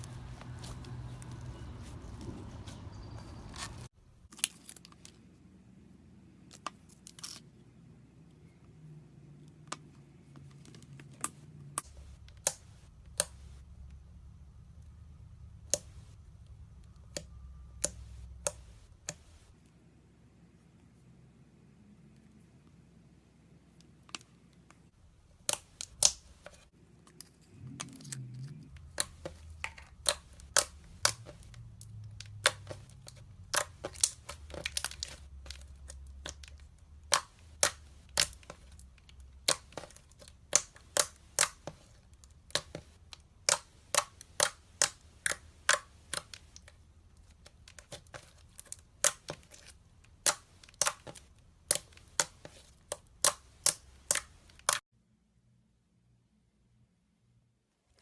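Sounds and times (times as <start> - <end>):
slime squelching: 24.2 - 54.8.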